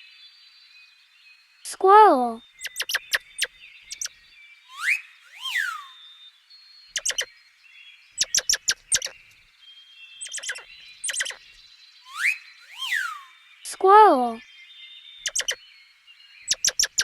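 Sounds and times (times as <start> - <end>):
squirrel chipping: 2.6 - 4.1, 7.0 - 7.3, 8.2 - 9.3, 10.2 - 11.5, 15.2 - 15.6, 16.5 - 17.0
squirrel squealing: 2.6 - 4.1, 7.0 - 7.3, 8.2 - 9.2, 10.2 - 11.4, 15.2 - 15.6, 16.5 - 17.0.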